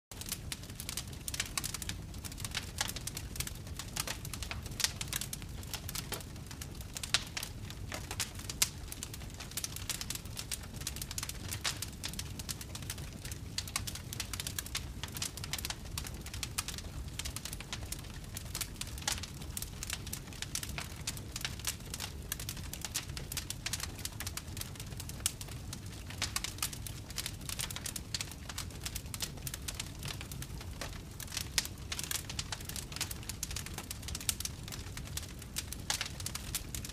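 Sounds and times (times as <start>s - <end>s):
wood fire crackling: 0.1s - 36.9s.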